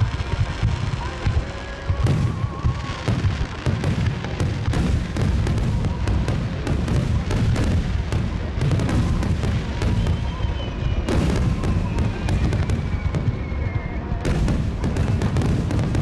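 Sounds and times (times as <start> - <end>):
fireworks booms: 0.0 - 16.0
fireworks cracks and crackling: 0.0 - 16.0
falling whistling tone: 9.7 - 14.2.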